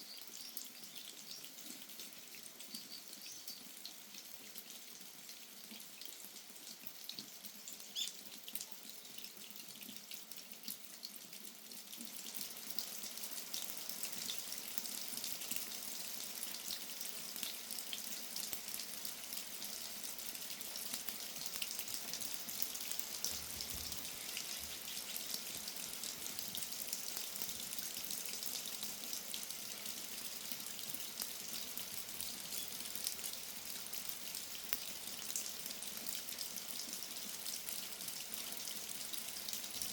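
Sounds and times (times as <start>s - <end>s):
rain falling: 17.9s - 39.9s.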